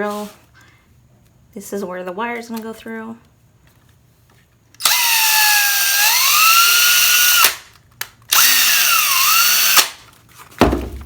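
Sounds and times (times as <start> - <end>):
power drill boring into cork: 4.8 - 7.6, 8.3 - 9.9.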